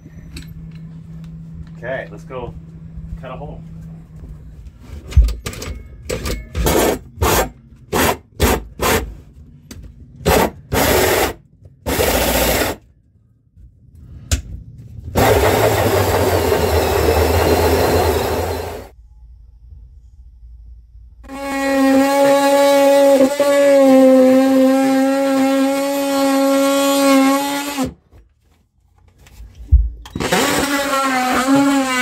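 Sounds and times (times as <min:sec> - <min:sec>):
power tool cutting fibreglass: 0:10.3 - 0:12.8, 0:15.2 - 0:18.9, 0:21.3 - 0:28.0, 0:30.2 - 0:32.0
motor humming: 0:15.2 - 0:18.9.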